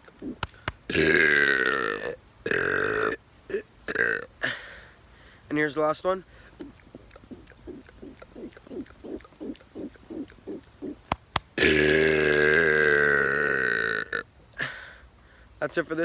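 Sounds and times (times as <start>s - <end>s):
sharp clicks: 0.0s - 0.9s, 6.6s - 11.6s
man burping: 0.9s - 4.6s, 11.6s - 14.8s.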